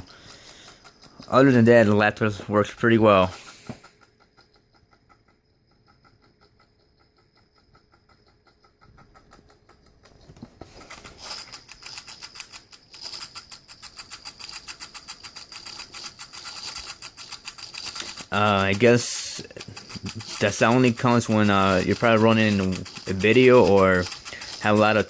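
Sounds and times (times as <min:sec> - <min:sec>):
laptop rapid rhythmic ticking: 0:00.0 - 0:25.0.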